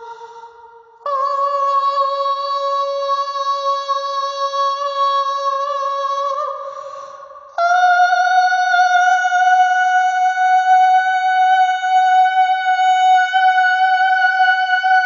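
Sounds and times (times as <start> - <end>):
sustained vocal hum: 0.0 - 11.5.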